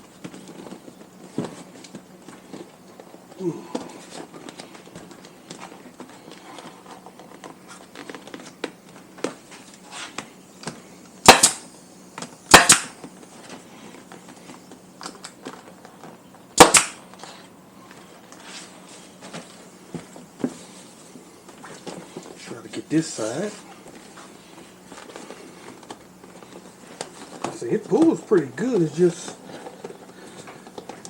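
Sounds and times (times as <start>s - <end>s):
nail gun firing: 11.2s - 11.7s, 12.5s - 13.0s, 16.6s - 17.0s.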